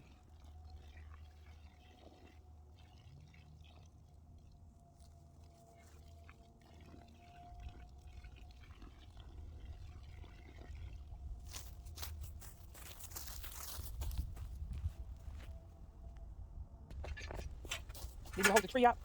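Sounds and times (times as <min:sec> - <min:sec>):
water pouring into hole: 0:00.1 - 0:11.5.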